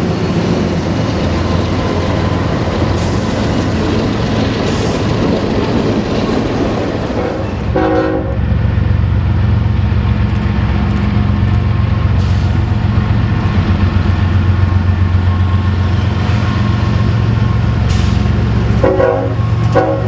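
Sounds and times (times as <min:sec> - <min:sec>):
multi-tone horn blast: 0:07.2 - 0:08.4, 0:18.8 - 0:20.0
low engine drone: 0:07.4 - 0:20.0
heavy vehicle rushing noise: 0:08.5 - 0:19.8.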